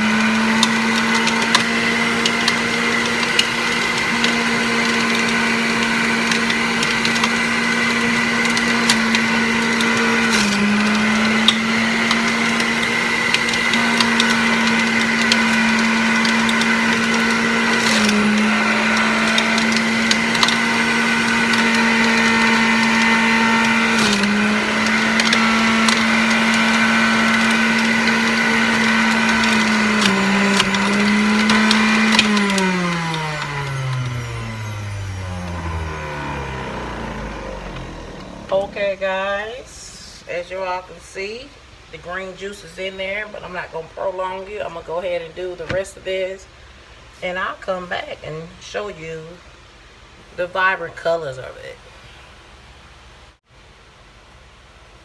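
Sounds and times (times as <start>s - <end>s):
juicer motor running: 0.0s - 39.2s.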